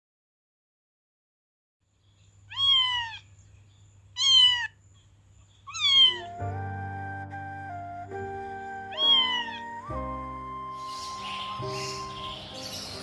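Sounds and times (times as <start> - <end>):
cat meowing: 2.5 - 3.3, 4.2 - 4.8, 5.7 - 6.4, 8.9 - 9.9
background music sustained notes: 6.2 - 13.0.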